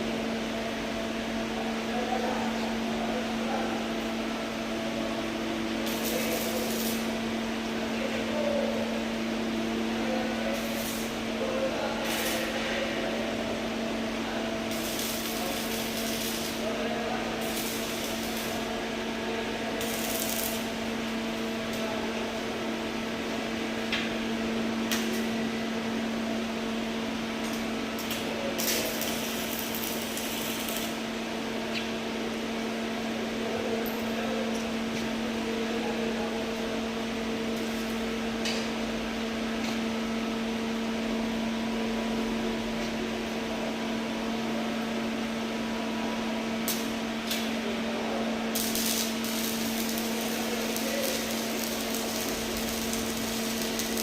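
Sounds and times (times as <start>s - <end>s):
welding machine hum: 3.8s - 33.1s, 36.8s - 39.9s, 46.4s - 54.0s
welding arc hissing and crackling: 5.8s - 7.2s, 10.3s - 12.6s, 14.6s - 21.0s, 27.4s - 31.1s, 48.2s - 54.0s.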